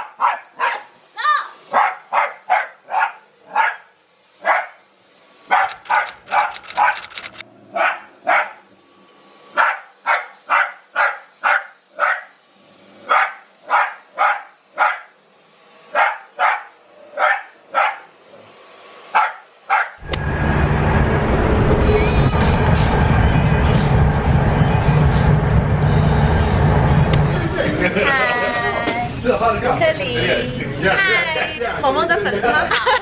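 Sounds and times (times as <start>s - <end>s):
dog barking: 0.1s - 0.9s, 1.7s - 3.9s, 9.6s - 12.3s, 13.1s - 15.1s, 16.0s - 18.1s, 19.2s - 20.0s
sharp clicks: 5.6s - 7.4s, 27.1s - 27.4s.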